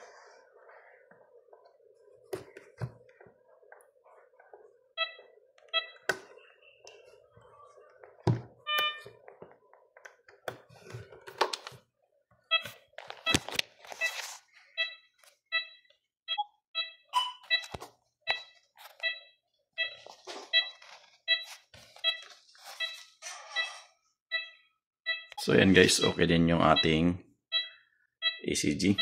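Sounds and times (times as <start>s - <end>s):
patient monitor beeps: 4.9s - 6.8s, 8.6s - 9.1s, 12.5s - 29.0s.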